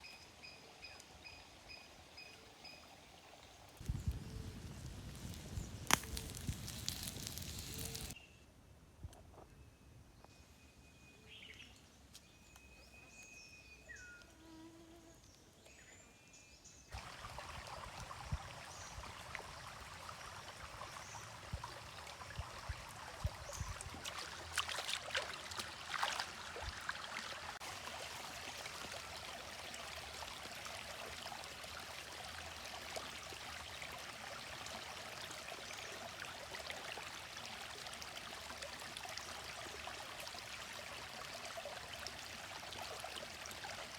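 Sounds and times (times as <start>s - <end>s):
stream water flowing: 16.9s - 43.9s.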